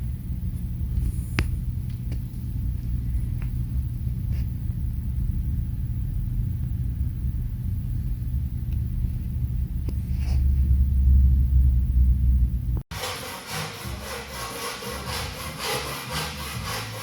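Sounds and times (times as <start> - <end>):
steady low rumble: 0.0 - 12.9.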